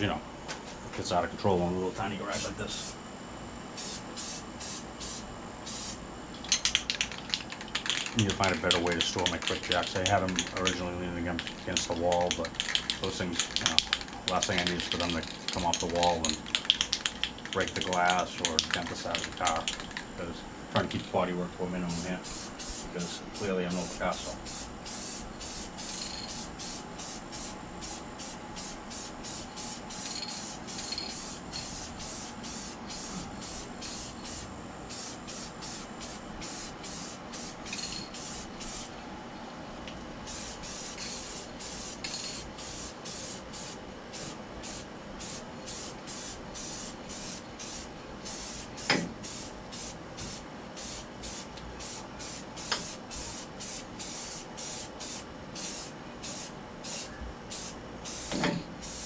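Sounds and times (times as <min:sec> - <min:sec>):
spray paint hissing: 0:03.8 - 0:10.8, 0:11.4 - 0:20.0, 0:21.9 - 0:38.9, 0:40.2 - 0:59.0
sharp clicks: 0:06.4 - 0:10.8, 0:11.4 - 0:20.1.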